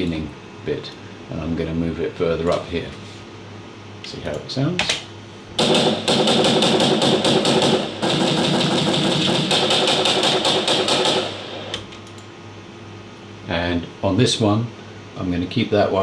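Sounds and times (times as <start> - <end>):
machine-gun automatic fire: 5.6 - 11.7.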